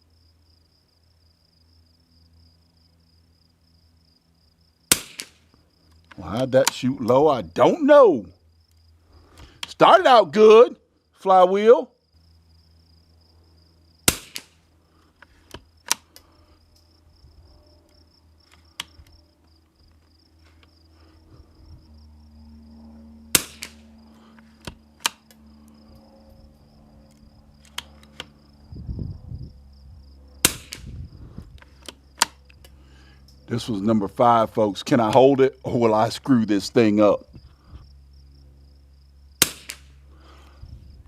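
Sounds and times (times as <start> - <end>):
rifle shots: 4.9 - 5.5, 14.0 - 14.6, 23.3 - 23.9, 30.4 - 30.9, 39.4 - 40.0
quiet rifle clicks: 14.1 - 16.9, 17.9 - 20.8, 23.4 - 25.8, 27.0 - 28.4.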